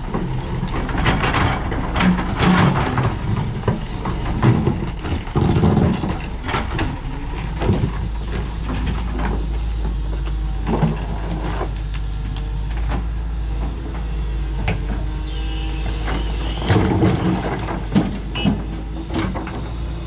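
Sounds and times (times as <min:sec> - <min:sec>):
machine knocks and clanks: 0:00.0 - 0:11.7, 0:15.9 - 0:19.9
excavator diesel engine running: 0:00.0 - 0:20.0.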